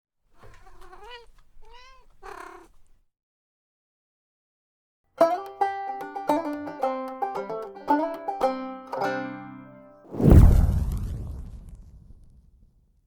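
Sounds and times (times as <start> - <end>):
cat meowing: 0.4 - 2.9
banjo music: 5.2 - 10.0.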